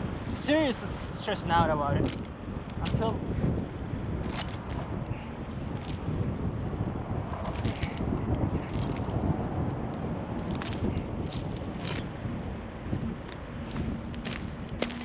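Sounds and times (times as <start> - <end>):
steady low rumble: 0.0 - 15.0
steel tire chains clinking: 4.2 - 6.2, 7.4 - 9.3, 9.9 - 12.1, 14.0 - 15.0.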